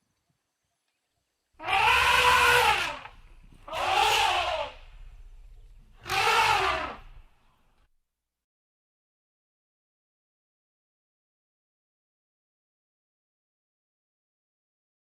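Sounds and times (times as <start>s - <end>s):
large animal calling harshly: 1.6s - 5.0s, 6.0s - 7.3s.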